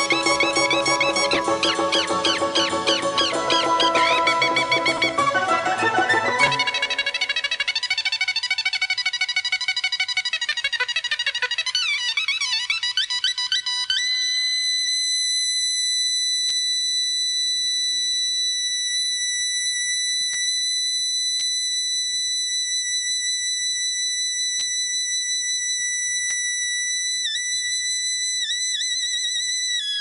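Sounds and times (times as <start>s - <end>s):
suona holding high note: 0.0s - 8.5s.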